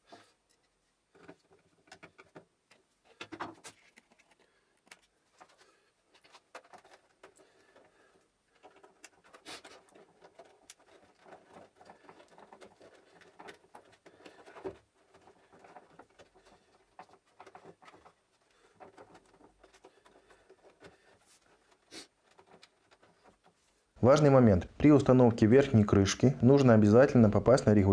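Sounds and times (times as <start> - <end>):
plastic parts clicking and knocking: 0.0 - 23.6.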